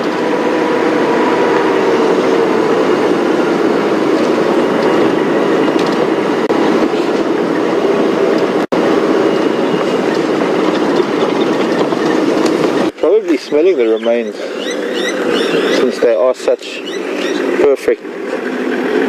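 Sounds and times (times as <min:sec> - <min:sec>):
vehicle engine running: 0:00.0 - 0:19.0
vehicle body rattling and jolting: 0:09.7 - 0:19.0.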